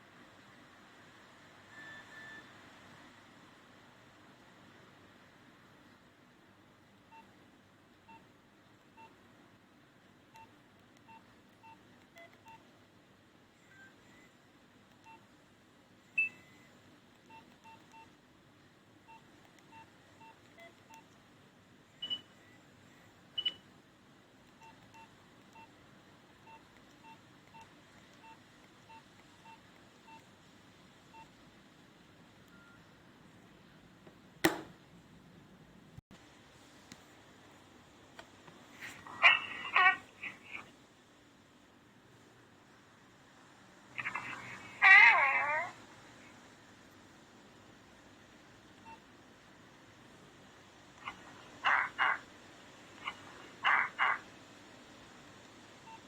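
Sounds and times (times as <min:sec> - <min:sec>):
phone keypad beeps: 0:11.1 - 0:12.6, 0:16.1 - 0:18.1, 0:22.0 - 0:23.6.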